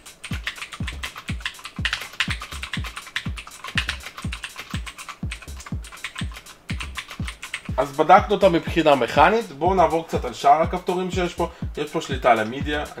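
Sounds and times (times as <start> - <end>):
mechanical keyboard typing: 0.0 - 9.1
background music with low beat: 0.0 - 13.0.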